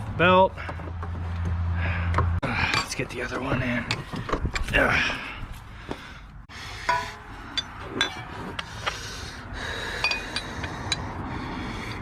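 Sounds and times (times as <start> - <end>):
metal tools clinking and scraping: 2.5 - 4.9, 6.8 - 9.0, 9.9 - 11.0.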